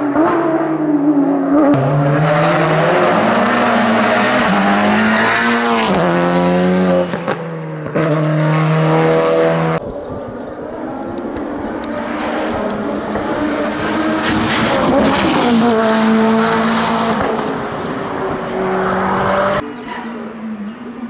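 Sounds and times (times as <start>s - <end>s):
race car engine passing at full throttle: 0.0s - 21.0s.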